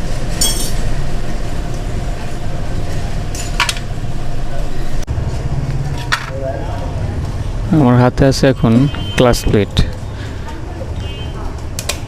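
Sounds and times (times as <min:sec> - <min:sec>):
workshop background rumble: 0:00.0 - 0:12.0
sharp metallic clink: 0:00.4 - 0:00.8.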